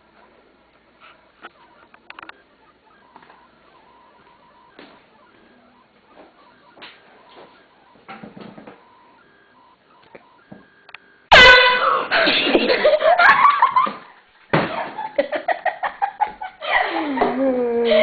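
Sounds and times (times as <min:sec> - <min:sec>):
air horn blaring: 0:11.3 - 0:12.1
laughter: 0:11.9 - 0:18.0.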